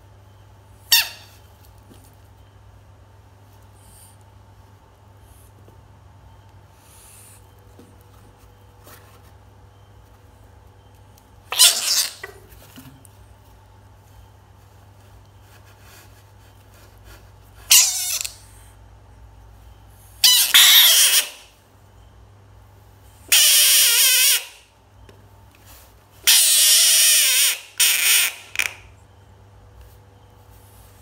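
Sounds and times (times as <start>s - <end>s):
bullfrog screaming: 11.5s - 12.2s, 20.2s - 21.4s, 23.3s - 24.6s, 26.3s - 28.7s.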